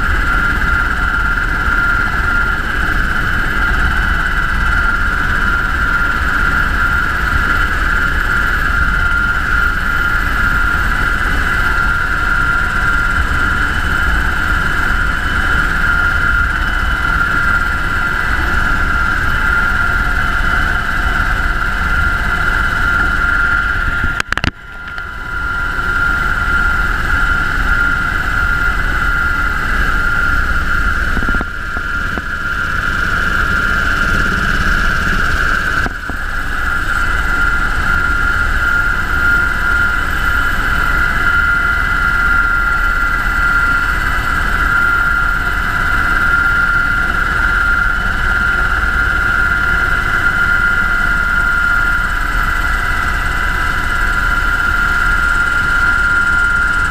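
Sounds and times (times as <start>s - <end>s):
helicopter engine and rotor noise: 0.0s - 56.9s
high whine: 0.0s - 56.9s.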